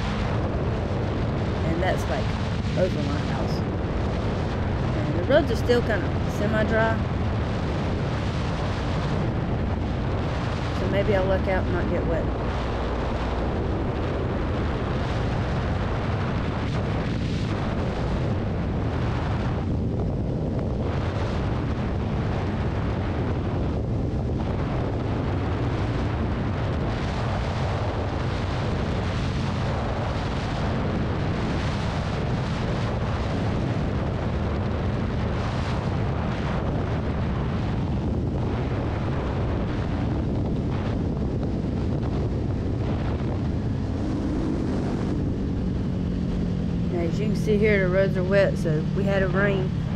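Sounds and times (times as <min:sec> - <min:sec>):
wind buffeting microphone: 0:00.0 - 0:49.9
motorcycle engine running: 0:42.5 - 0:49.9.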